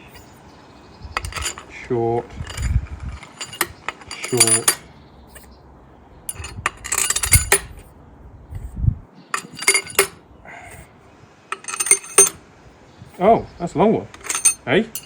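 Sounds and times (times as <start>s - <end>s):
metal studs clinking: 0.0s - 0.3s, 1.2s - 5.5s, 6.3s - 7.9s, 9.3s - 10.2s, 11.5s - 12.4s, 14.1s - 15.0s.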